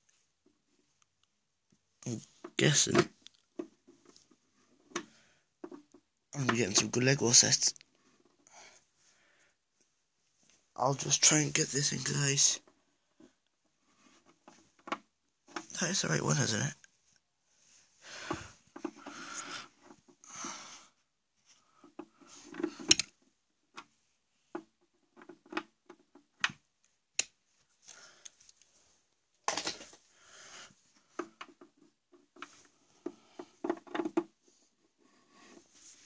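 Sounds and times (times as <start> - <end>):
plastic clicks and knocks: 21.9 - 26.6, 31.1 - 34.4.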